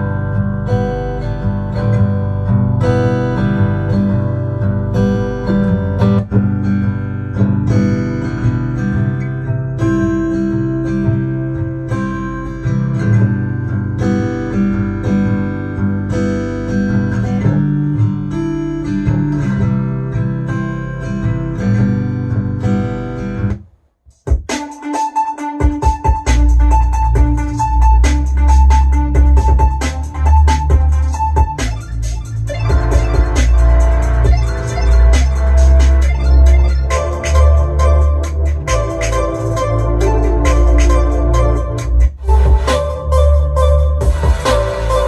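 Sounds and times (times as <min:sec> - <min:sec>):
acoustic guitar music on speaker: 0:00.0 - 0:23.6, 0:24.3 - 0:45.0
music with heavy deep bass: 0:25.6 - 0:45.0.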